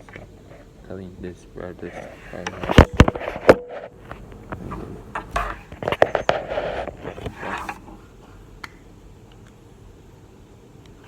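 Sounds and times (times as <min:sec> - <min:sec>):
paper rustling and scraping: 0:01.8 - 0:08.0.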